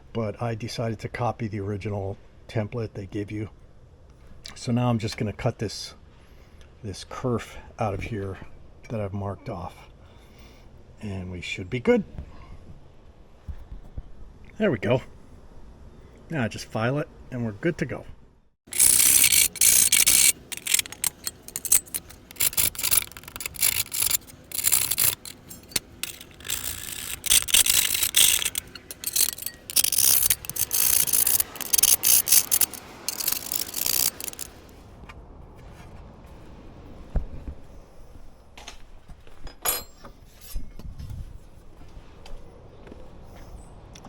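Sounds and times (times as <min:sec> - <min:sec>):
hand file rasping: 0:18.7 - 0:34.7.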